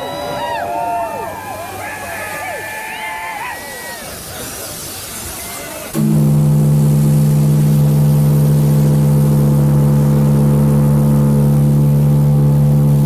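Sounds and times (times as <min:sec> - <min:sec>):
ship's whistle deep blast: 0:05.9 - 0:13.0.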